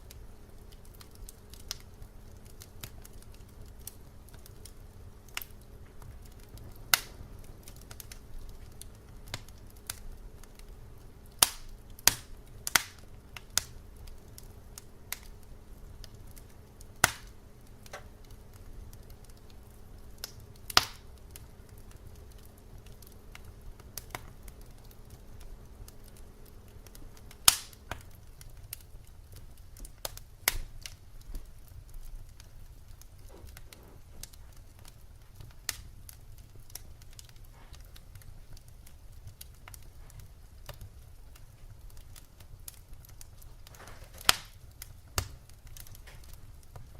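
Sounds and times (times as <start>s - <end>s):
low steady rumble: 0.0s - 43.8s
faint steady hum: 0.0s - 46.9s
firewood popping and snapping: 0.0s - 46.9s.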